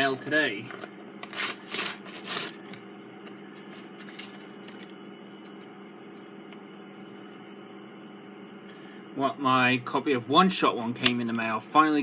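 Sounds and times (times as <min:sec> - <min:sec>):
low steady hum: 0:00.0 - 0:12.0
packaging being torn open: 0:01.2 - 0:02.8.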